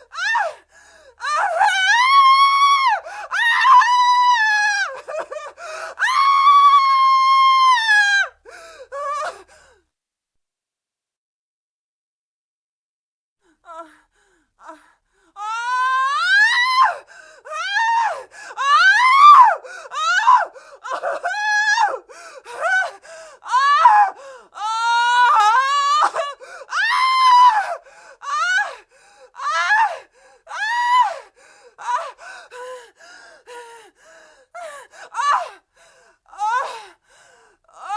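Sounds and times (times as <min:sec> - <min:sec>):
woman screaming: 0:01.2 - 0:05.1, 0:06.0 - 0:08.3, 0:15.4 - 0:17.0, 0:17.6 - 0:20.5, 0:23.5 - 0:28.7.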